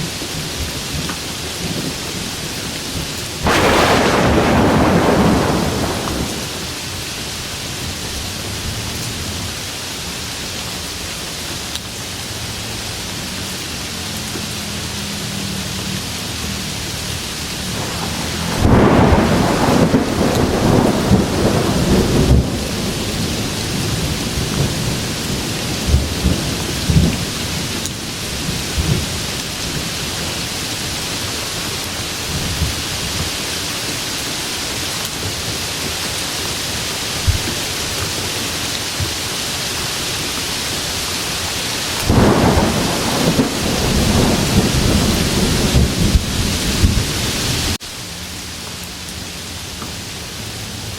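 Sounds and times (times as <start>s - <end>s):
steady rain: 0.0s - 50.9s
thunder: 3.4s - 6.8s, 17.6s - 27.7s, 41.9s - 47.7s.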